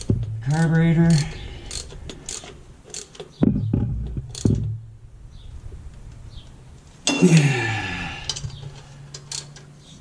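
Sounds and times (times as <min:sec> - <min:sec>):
hand tools clicking on metal: 0:00.0 - 0:03.4, 0:08.2 - 0:09.7.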